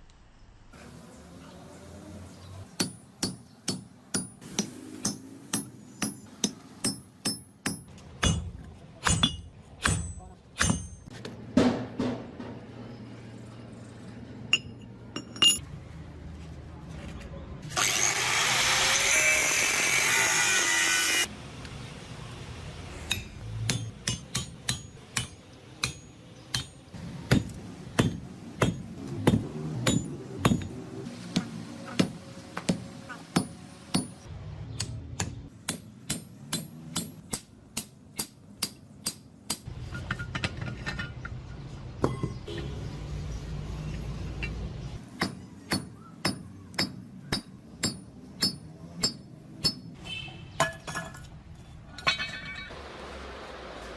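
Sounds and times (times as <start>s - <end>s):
hammer striking hot steel on anvil: 2.8s - 11.1s, 23.0s - 30.8s, 31.4s - 34.2s, 34.8s - 40.3s, 45.2s - 50.0s.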